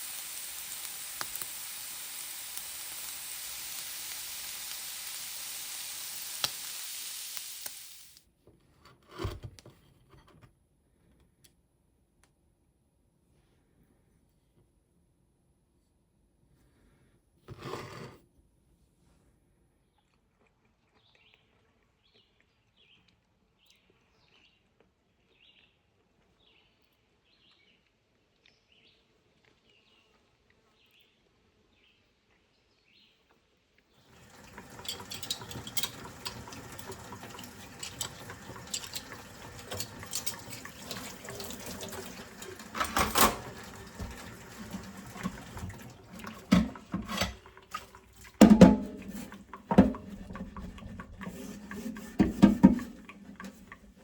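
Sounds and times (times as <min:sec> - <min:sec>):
tap water running into sink: 0:00.0 - 0:07.9, 0:34.1 - 0:54.0.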